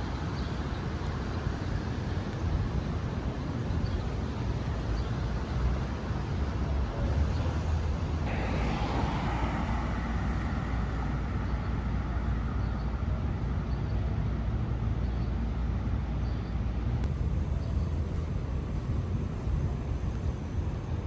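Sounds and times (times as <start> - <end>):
city traffic rumble: 0.0 - 21.0
vehicle passing: 8.3 - 13.7.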